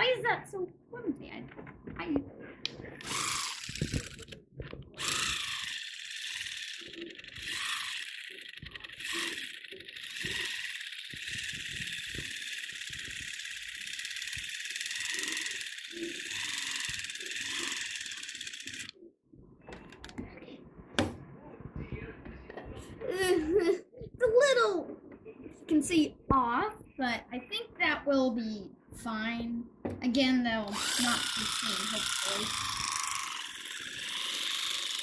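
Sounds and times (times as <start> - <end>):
electric knife buzzing: 3.0 - 4.4, 5.0 - 19.0, 30.7 - 35.0.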